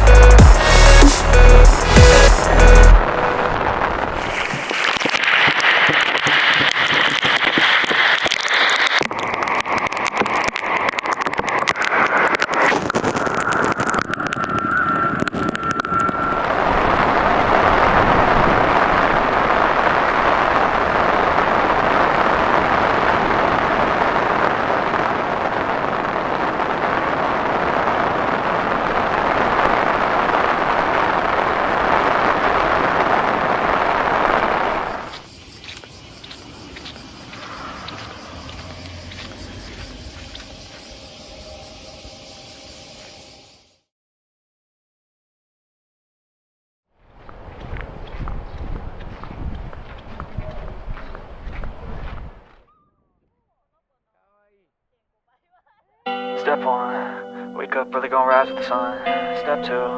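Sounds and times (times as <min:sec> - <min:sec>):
heavy rain: 0:00.0 - 0:35.3, 0:36.8 - 0:41.6.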